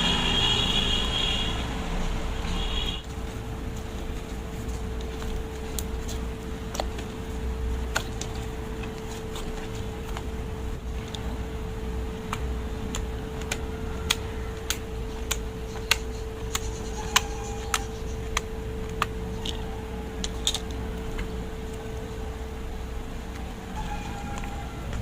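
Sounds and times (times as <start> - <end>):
steady hum: 0.0 - 25.0
slime clicking: 4.9 - 10.4, 12.0 - 21.8.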